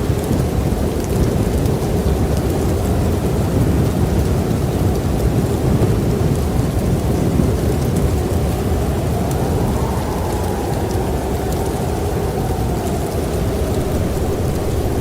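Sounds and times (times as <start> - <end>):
wind blowing across microphone: 0.0 - 15.0.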